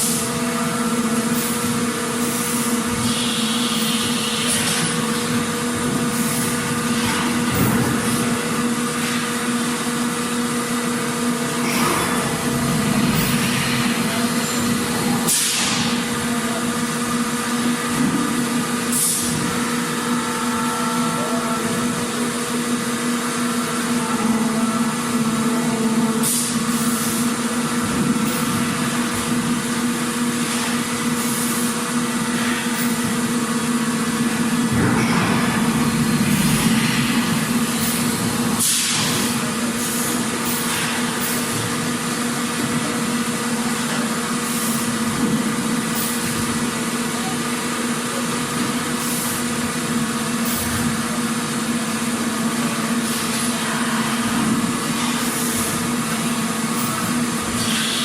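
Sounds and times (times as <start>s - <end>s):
machine hum: 0.0s - 18.9s, 31.8s - 47.0s
general mechanical noise: 0.0s - 58.0s.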